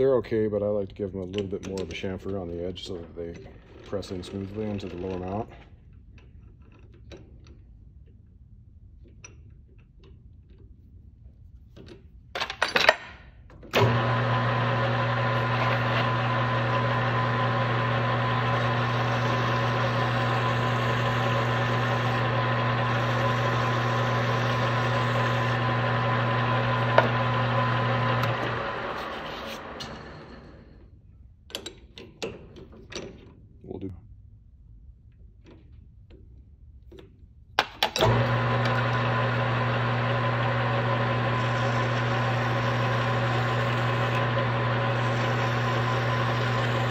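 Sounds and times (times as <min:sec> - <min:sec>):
power tool motor humming: 0:13.8 - 0:30.6, 0:38.0 - 0:46.9.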